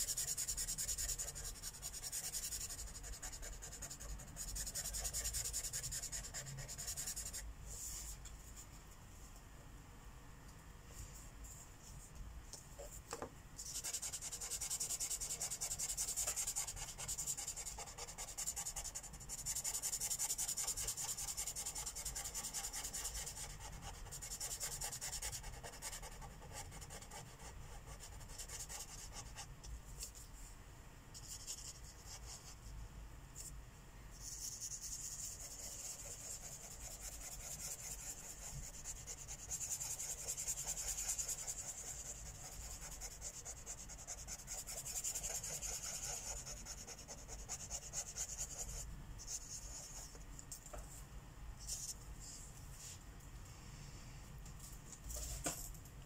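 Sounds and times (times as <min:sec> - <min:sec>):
marker scratching on paper: 0:00.0 - 0:08.2, 0:13.6 - 0:29.5, 0:34.2 - 0:50.2.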